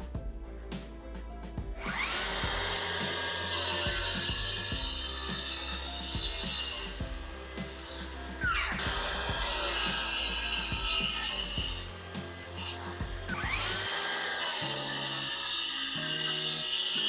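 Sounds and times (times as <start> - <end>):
background music: 0.0 - 17.0
tool rasping wood: 1.7 - 17.0.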